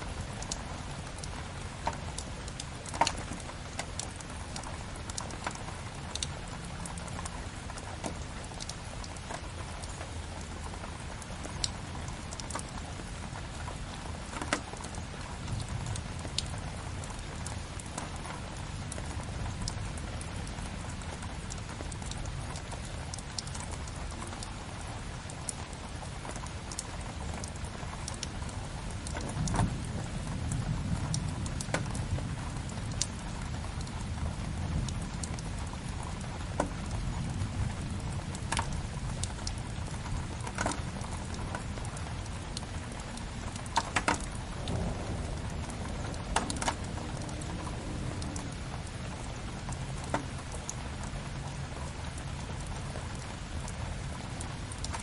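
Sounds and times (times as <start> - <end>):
steady rain hiss: 0.0 - 55.0
fireplace crackling and popping: 43.1 - 48.8.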